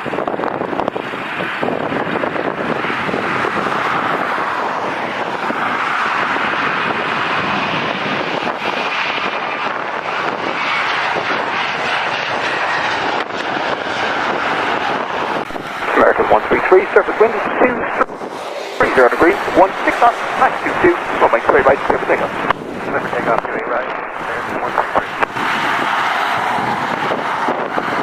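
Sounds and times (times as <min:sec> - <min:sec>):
jet engines at takeoff: 0:00.0 - 0:28.0.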